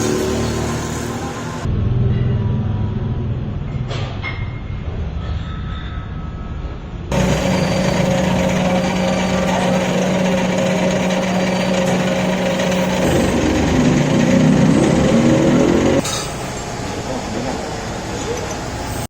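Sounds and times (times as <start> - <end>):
harsh metal cutting grind: 0.0 - 1.6, 7.1 - 16.4
machine tool motor tone: 7.1 - 16.1.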